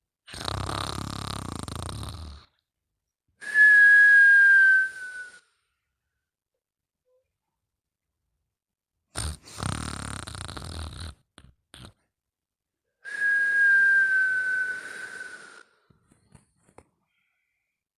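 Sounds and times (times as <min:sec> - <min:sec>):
rattling snore: 0:00.3 - 0:02.5, 0:09.2 - 0:12.0
whistling out-breath: 0:03.4 - 0:05.8, 0:13.0 - 0:16.3.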